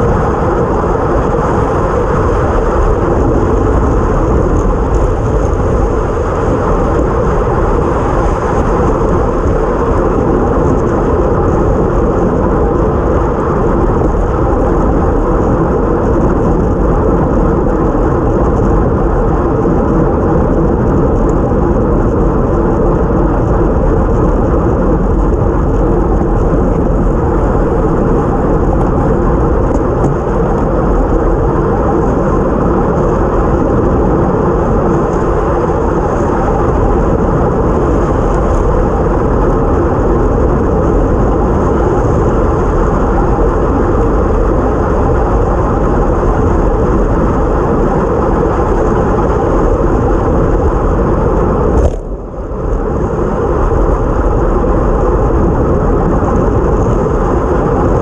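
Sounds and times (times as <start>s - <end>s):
tyre noise on wet road: 0.0s - 58.0s
wind buffeting microphone: 0.0s - 58.0s.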